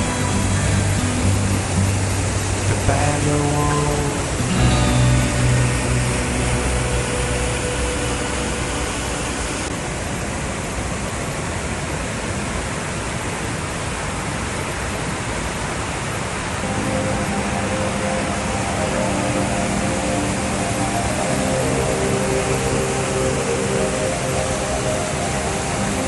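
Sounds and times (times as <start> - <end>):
background music: 0.0 - 9.7, 16.6 - 26.0
water rushing: 0.0 - 26.0.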